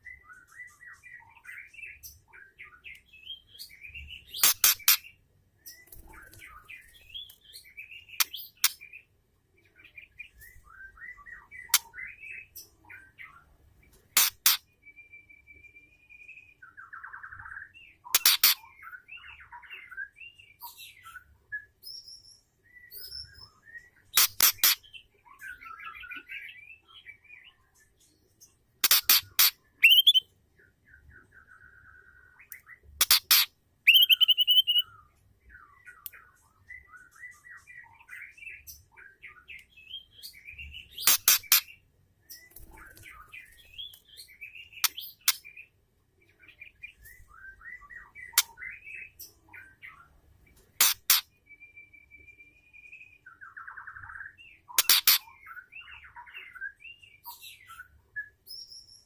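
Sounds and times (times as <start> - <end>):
bird chirping and twittering: 0.0 - 59.0
harsh rattling bird calls: 3.7 - 9.0, 14.2 - 14.6, 17.3 - 19.0, 24.1 - 26.4, 28.8 - 30.3, 33.0 - 35.0, 40.3 - 45.6, 50.8 - 51.3, 53.5 - 56.6.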